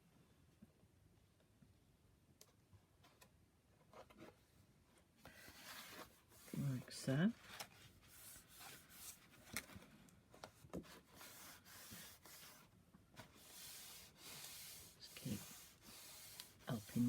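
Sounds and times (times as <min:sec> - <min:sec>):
cardstock rubbing: 0:13.2 - 0:17.0.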